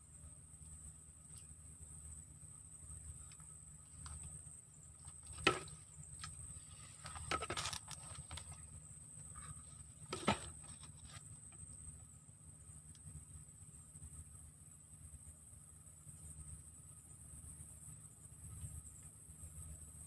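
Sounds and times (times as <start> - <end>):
insects droning: 0.0 - 20.0.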